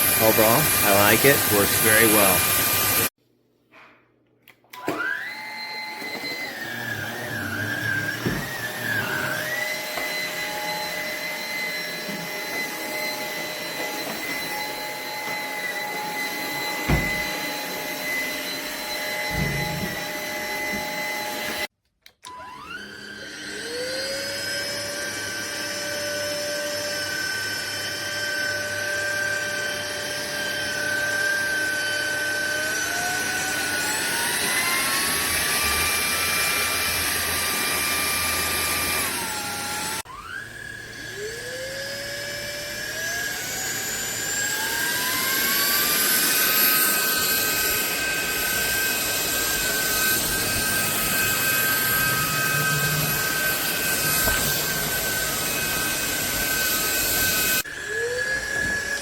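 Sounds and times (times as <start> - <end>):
vacuum motor whining: 0.0 - 3.1, 4.7 - 59.0.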